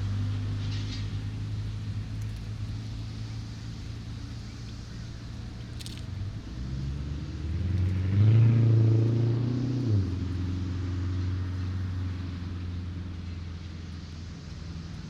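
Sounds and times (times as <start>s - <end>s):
vehicle engine running: 0.0s - 8.1s.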